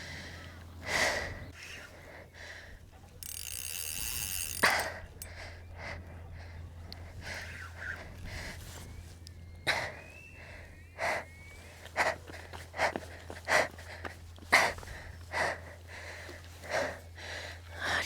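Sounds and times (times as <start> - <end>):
steady low hum: 0.0 - 18.0
person breathing hard: 11.9 - 17.9.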